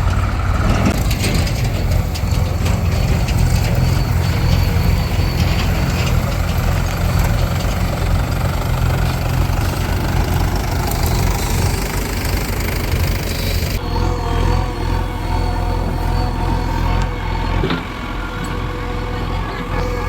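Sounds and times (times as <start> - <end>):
heavy diesel engine throbbing: 0.0 - 20.0
steady humming tone: 10.7 - 20.0.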